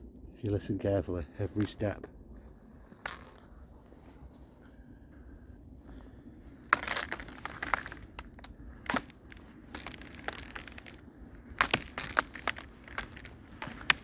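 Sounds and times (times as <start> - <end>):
footsteps crunching on ice: 2.8 - 4.6, 5.8 - 14.0.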